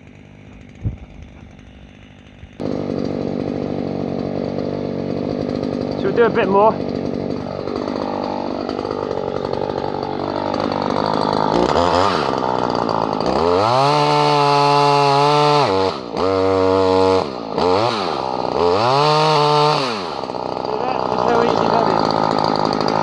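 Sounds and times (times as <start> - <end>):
two-stroke engine idling and revving: 0.0 - 23.0.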